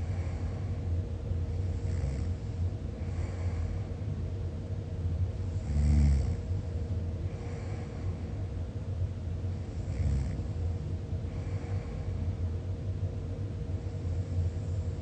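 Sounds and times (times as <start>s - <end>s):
person snoring: 1.7s - 2.4s, 5.5s - 6.4s, 9.8s - 10.5s.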